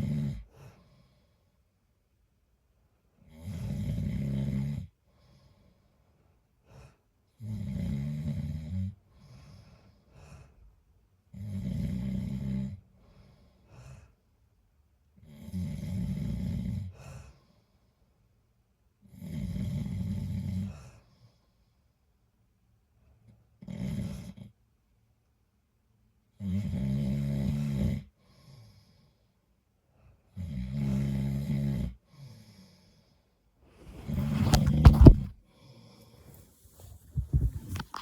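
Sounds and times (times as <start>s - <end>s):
soft breathing: 32.6s - 38.0s.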